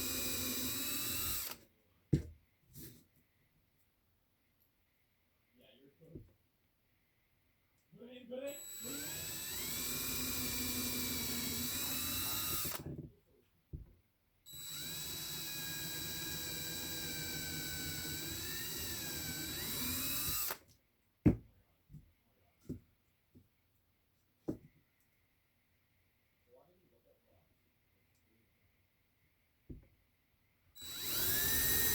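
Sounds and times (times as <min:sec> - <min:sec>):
electric drill whining: 0:00.0 - 0:01.6, 0:08.5 - 0:12.9, 0:14.5 - 0:20.6, 0:30.8 - 0:31.9.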